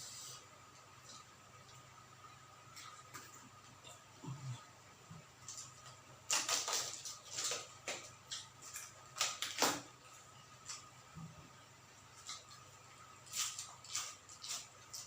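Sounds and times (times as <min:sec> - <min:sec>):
crunching and chewing: 0:05.4 - 0:10.9, 0:12.1 - 0:15.0.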